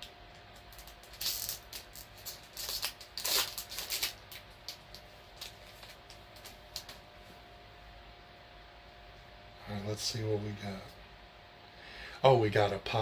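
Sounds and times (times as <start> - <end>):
card pack wrapper tearing: 0.6 - 7.0.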